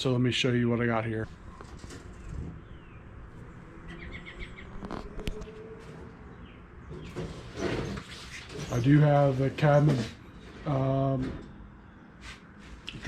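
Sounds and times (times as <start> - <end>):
faint bird chirps: 3.8 - 4.8.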